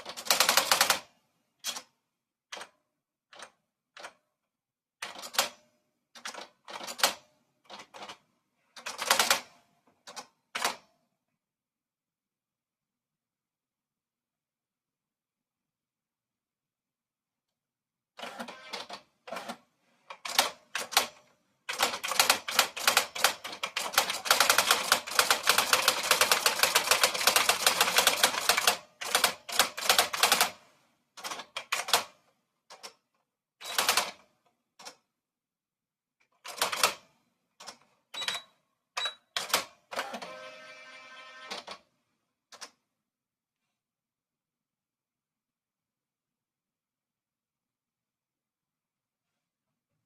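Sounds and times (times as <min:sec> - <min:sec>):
typewriter keystrokes: 0:20.3 - 0:30.6, 0:33.7 - 0:34.2, 0:39.4 - 0:40.2.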